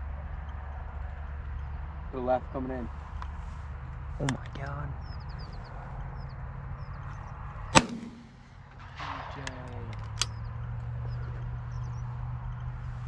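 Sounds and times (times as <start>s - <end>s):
shotgun blast: 7.7s - 9.7s
faint sharp crack: 7.8s - 10.4s.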